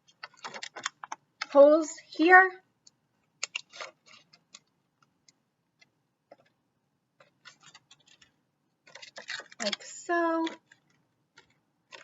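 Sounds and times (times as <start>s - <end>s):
paper pieces punched out clicking: 0.1s - 1.5s, 3.4s - 4.7s, 7.2s - 12.0s.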